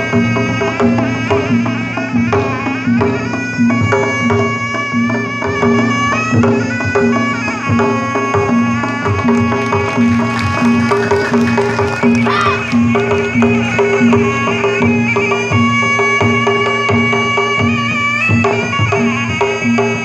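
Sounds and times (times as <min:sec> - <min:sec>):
hand drums beating: 0:08.4 - 0:14.9
reedy wind instrument melody: 0:08.4 - 0:16.9.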